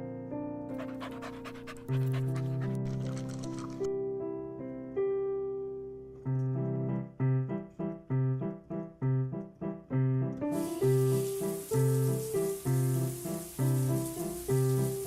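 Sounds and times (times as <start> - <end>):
piano chords: 0.0 - 15.0.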